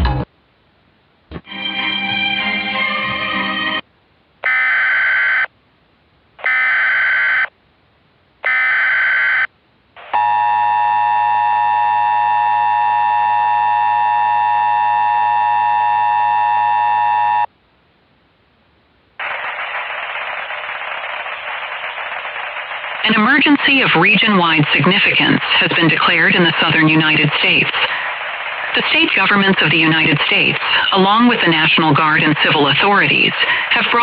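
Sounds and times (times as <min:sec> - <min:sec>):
static hiss: 0:17.5 - 0:34.0.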